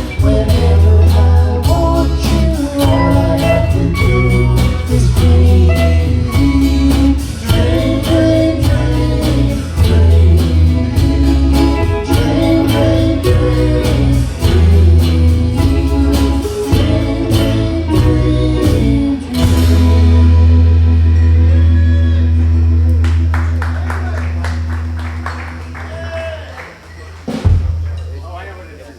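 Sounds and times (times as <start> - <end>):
steady drum beat: 0.0 - 20.6, 26.7 - 28.2
person singing: 0.0 - 21.7
live band playing: 0.0 - 28.0.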